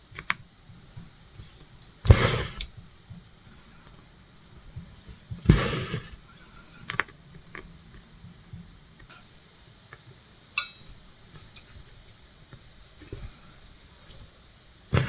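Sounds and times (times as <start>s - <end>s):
sharp tap with brief ring: 10.6s - 10.8s.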